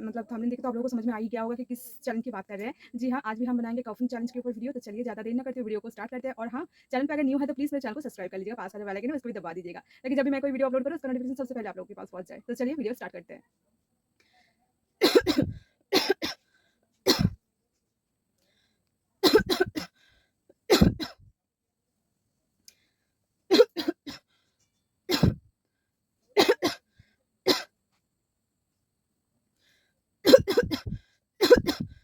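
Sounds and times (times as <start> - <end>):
person coughing: 15.0 - 16.4, 17.1 - 17.4, 19.2 - 19.9, 20.7 - 21.2, 23.5 - 24.2, 25.1 - 25.4, 26.4 - 26.8, 30.3 - 32.0.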